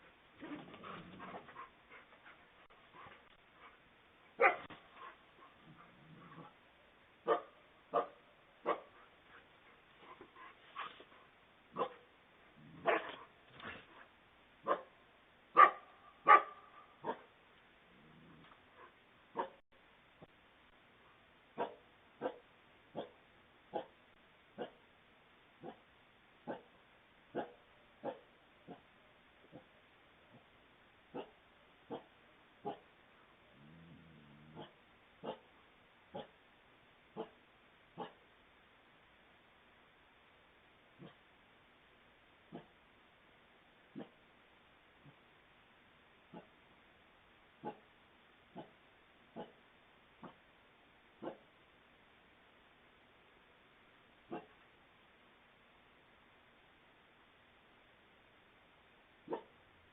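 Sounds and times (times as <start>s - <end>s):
faint steady hiss: 0.0s - 59.9s
wild canid barking: 0.4s - 11.1s, 11.7s - 14.0s, 14.6s - 19.6s, 21.5s - 24.8s, 25.6s - 30.5s, 31.1s - 36.4s, 37.1s - 38.3s, 40.9s - 41.3s, 42.5s - 42.8s, 43.9s - 44.2s, 46.3s - 46.6s, 47.6s - 50.5s, 51.2s - 51.5s, 54.2s - 54.6s, 59.2s - 59.6s
fox yelping and barking: 27.3s - 28.8s, 31.1s - 32.9s, 34.5s - 35.5s, 36.1s - 36.4s, 43.9s - 44.2s, 47.6s - 47.9s, 48.5s - 48.8s, 49.4s - 49.6s, 51.2s - 51.4s, 59.2s - 59.6s.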